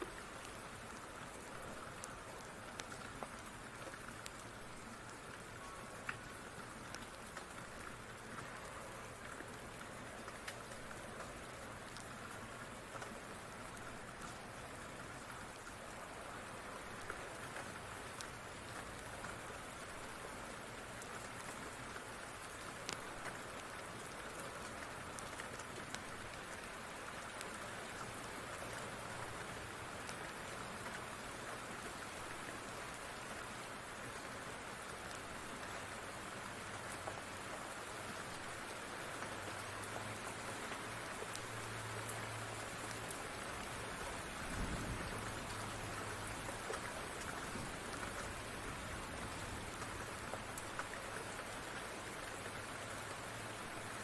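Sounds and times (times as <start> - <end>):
steady rain: 0.0 - 54.0
wood fire crackling: 22.8 - 26.6.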